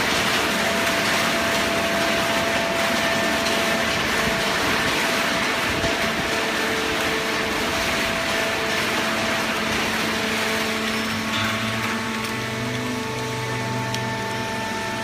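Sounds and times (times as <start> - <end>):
hydraulic baler running: 0.0 - 15.0
deeper hum: 5.8 - 15.0.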